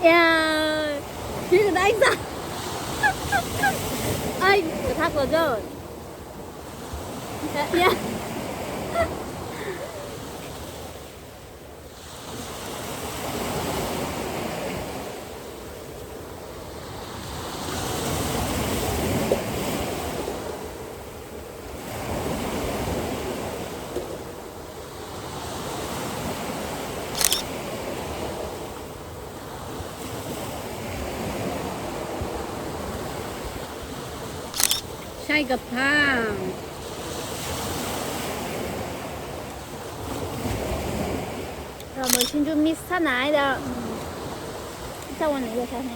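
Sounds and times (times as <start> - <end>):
surf breaking on beach: 0.0 - 15.5, 24.9 - 45.9
sharp click: 27.2 - 27.6, 34.6 - 35.1, 41.8 - 42.4.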